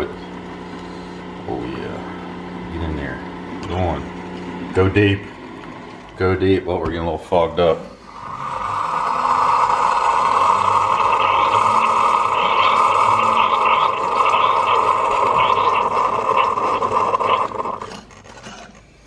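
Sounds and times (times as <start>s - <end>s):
coffee maker pump humming: 0.0s - 19.0s
water crackling and gurgling: 8.2s - 17.9s.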